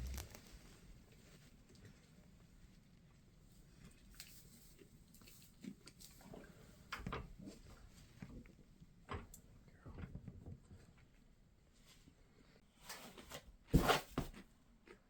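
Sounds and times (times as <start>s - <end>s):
faint rustling: 0.0s - 0.8s.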